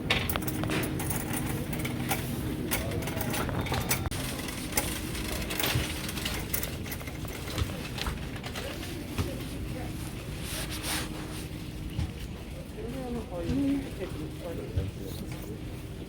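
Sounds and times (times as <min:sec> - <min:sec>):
clicks and rattles: 0:00.1 - 0:08.8.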